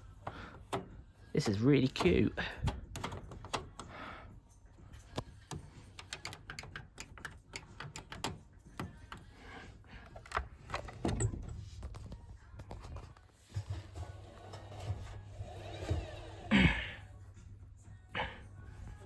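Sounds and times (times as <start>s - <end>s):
small hard parts clicking: 0.0s - 11.6s.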